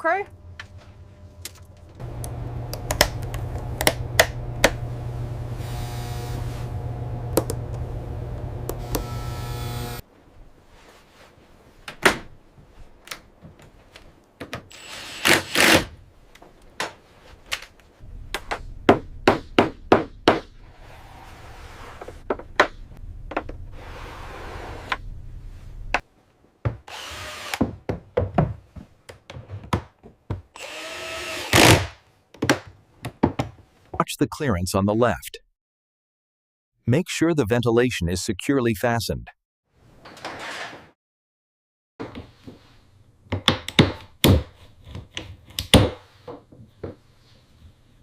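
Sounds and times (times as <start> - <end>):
low steady hum: 0.0 - 10.0
power tool bursts: 30.6 - 31.9.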